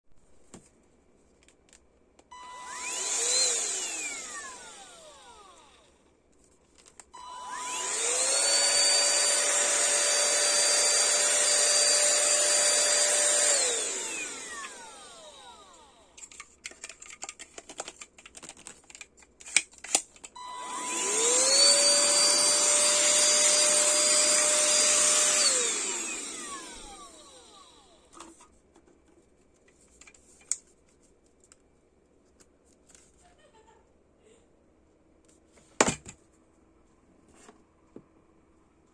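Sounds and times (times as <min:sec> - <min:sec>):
handheld vacuum motor whine: 0:02.3 - 0:06.0, 0:07.1 - 0:16.3, 0:20.4 - 0:28.4.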